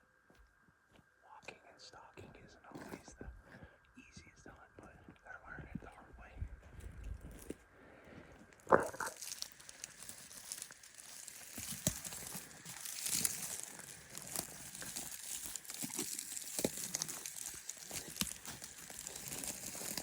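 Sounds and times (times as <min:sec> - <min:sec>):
dry rustling and crackling: 0:08.4 - 0:20.0.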